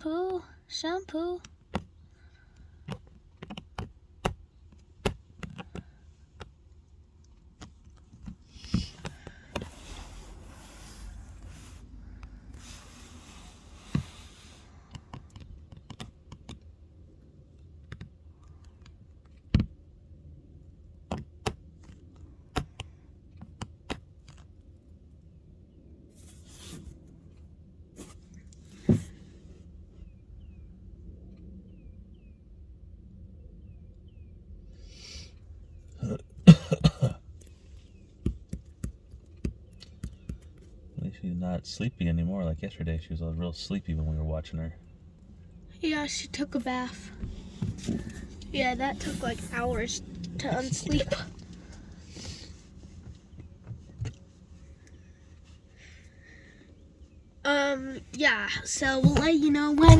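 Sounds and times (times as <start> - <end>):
faint low rumble: 24.5 - 38.2.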